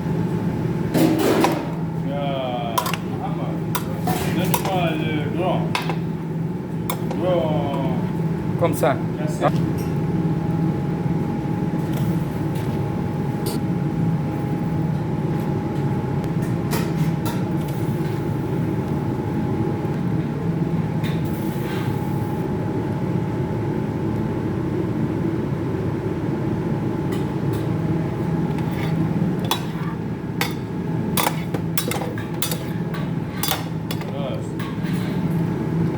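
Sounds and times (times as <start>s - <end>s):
mechanical hum with whine: 0.0s - 35.9s
pots and utensils clinking: 2.8s - 3.1s, 3.7s - 4.9s, 28.5s - 35.3s.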